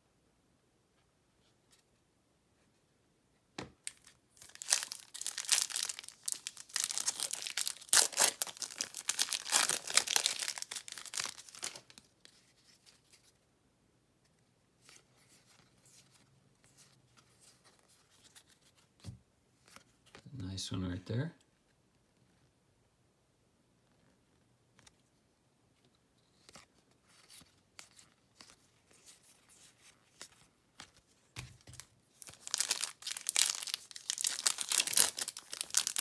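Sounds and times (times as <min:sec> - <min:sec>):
packaging tearing and crinkling: 0:03.9 - 0:12.0, 0:32.2 - 0:36.0.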